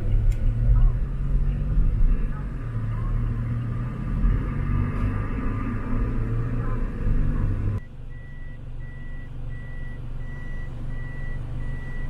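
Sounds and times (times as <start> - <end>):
bus engine rumbling: 0.0 - 12.0
high electronic warning beep: 8.1 - 12.0.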